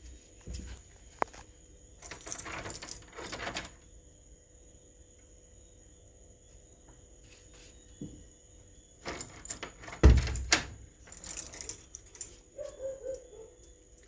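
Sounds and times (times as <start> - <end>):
door lock rattling: 2.0 - 3.8, 9.0 - 12.3
keys jangling: 2.0 - 3.8, 9.0 - 14.0.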